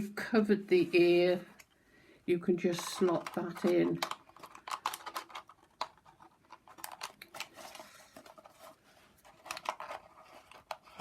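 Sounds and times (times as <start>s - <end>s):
craft materials scratching and rustling: 2.6s - 11.0s.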